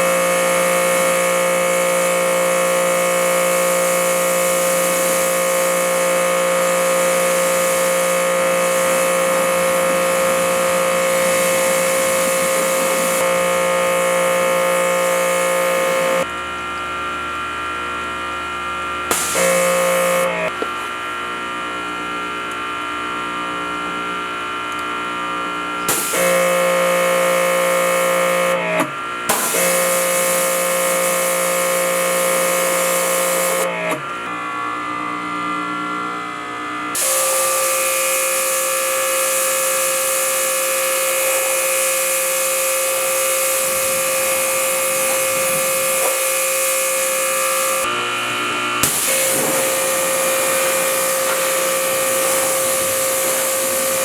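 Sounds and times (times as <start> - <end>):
water spray hissing: 0.0 - 16.2, 19.1 - 20.3, 29.4 - 33.7, 37.0 - 47.9, 48.8 - 54.0
pressure washer motor whine: 0.0 - 54.0.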